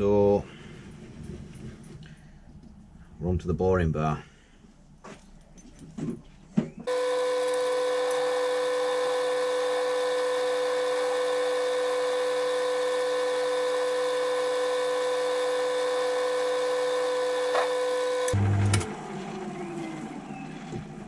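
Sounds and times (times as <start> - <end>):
metal lathe high-pitched whine: 6.9 - 18.4.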